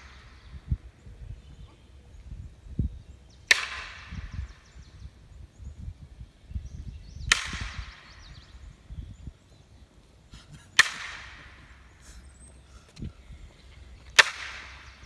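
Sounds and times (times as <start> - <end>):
loud sharp cracks: 3.5 - 4.3, 7.3 - 8.3, 10.8 - 12.0, 14.1 - 15.0.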